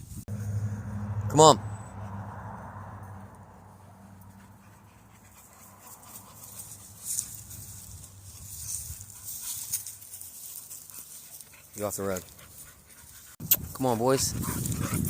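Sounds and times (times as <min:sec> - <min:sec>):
dogs scuffling and breathing: 0:04.2 - 0:15.0.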